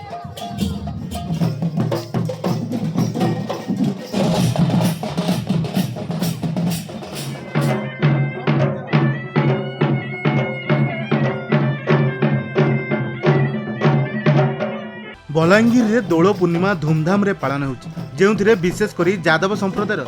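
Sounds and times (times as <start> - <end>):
steady tones: 0.0 - 2.9
ringing bells: 0.0 - 5.0
drums beaten fast: 0.0 - 20.0.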